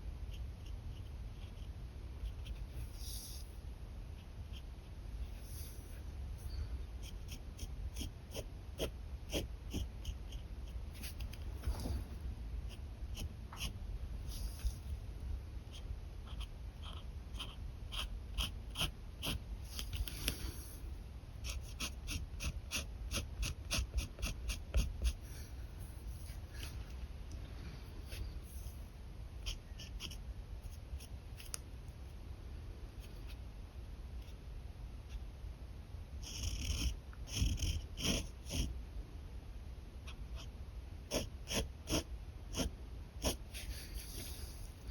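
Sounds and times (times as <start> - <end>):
pen scratching on paper: 0.2 - 3.6, 4.2 - 6.0, 7.0 - 12.0, 12.7 - 15.0, 15.6 - 20.7, 21.4 - 26.8, 29.4 - 31.5, 36.2 - 38.7, 40.1 - 40.5, 41.1 - 44.8.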